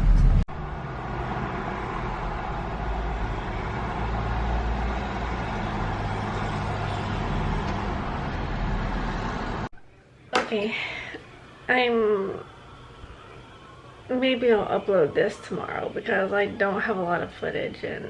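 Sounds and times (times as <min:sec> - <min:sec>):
car engine and road noise: 0:00.0 - 0:09.7.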